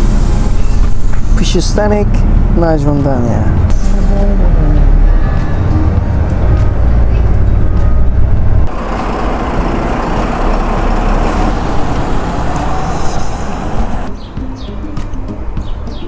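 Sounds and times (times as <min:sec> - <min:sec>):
bus engine rumble: 0:00.0 - 0:14.1
steady rushing noise: 0:06.1 - 0:14.1.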